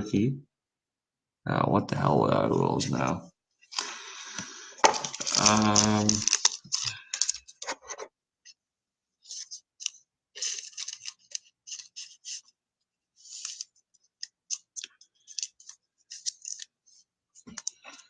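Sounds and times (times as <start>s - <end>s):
cards sliding and rustling: 3.7s - 8.1s, 9.2s - 17.7s.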